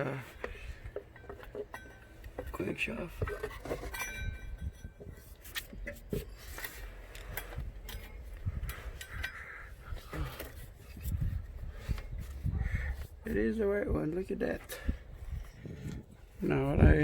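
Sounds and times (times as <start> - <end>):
light clicks of metal parts: 0.0 - 13.4.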